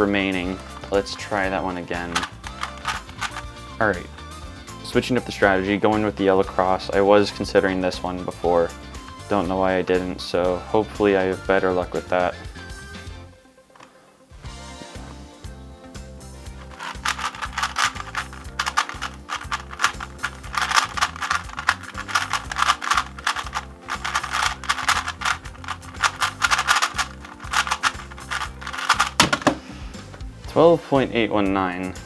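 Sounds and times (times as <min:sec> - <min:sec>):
background music: 0:00.0 - 0:32.0
puzzle cube turning clicks: 0:02.1 - 0:03.5, 0:16.6 - 0:29.6.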